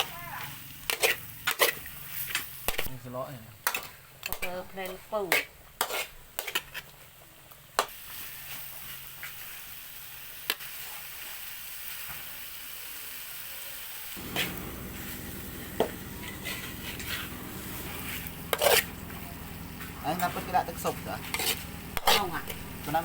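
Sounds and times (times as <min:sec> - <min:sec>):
food sizzling in a pan: 0:00.0 - 0:23.0
utensil clicking against pan: 0:03.6 - 0:04.5
low rumble: 0:14.2 - 0:23.0.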